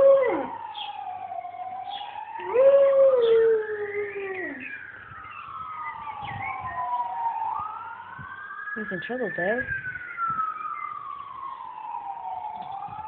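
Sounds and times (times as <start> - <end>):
dog howling: 0.0 - 0.6, 2.4 - 4.7
police siren wailing: 0.0 - 13.0.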